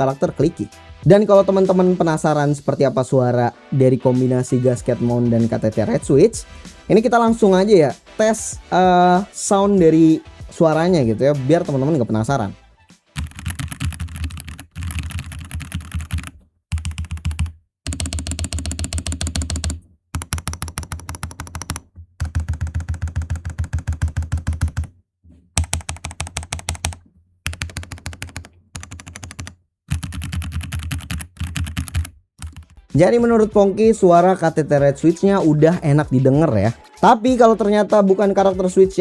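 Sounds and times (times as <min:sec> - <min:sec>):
mechanical keyboard typing: 0:13.2 - 0:24.9, 0:25.6 - 0:32.9.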